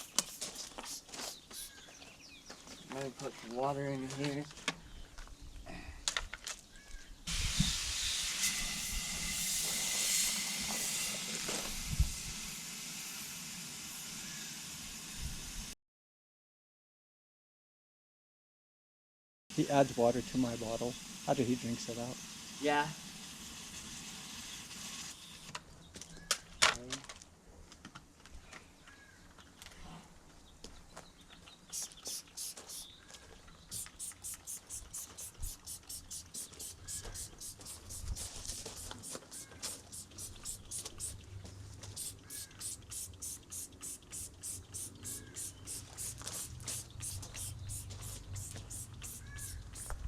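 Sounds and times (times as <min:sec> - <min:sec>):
water spray hissing: 0:00.0 - 0:01.9, 0:07.3 - 0:15.8, 0:19.5 - 0:25.5, 0:31.7 - 0:33.0, 0:33.6 - 0:50.0.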